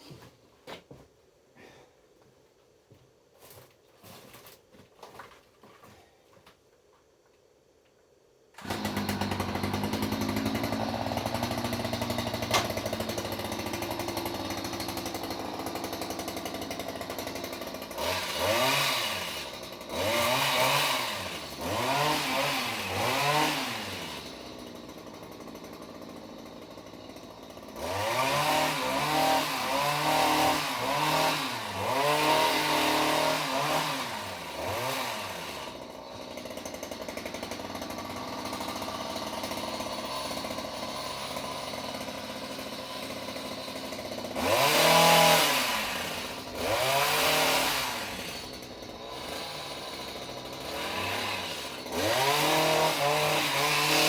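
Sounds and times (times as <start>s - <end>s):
chainsaw engine revving: 8.6s - 54.0s.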